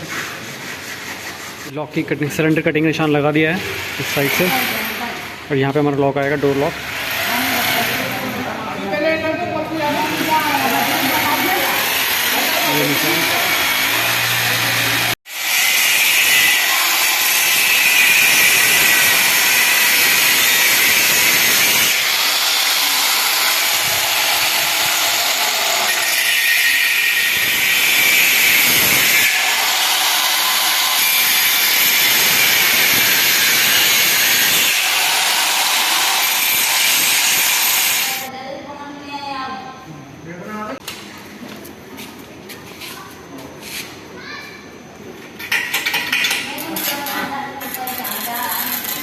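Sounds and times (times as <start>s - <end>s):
power tool cutting into door: 10.1s - 38.3s.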